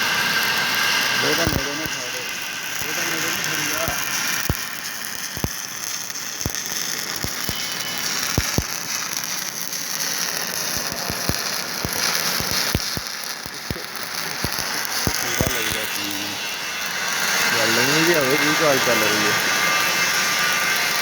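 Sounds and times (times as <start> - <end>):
arc welding hiss and crackle: 0.0 - 21.0.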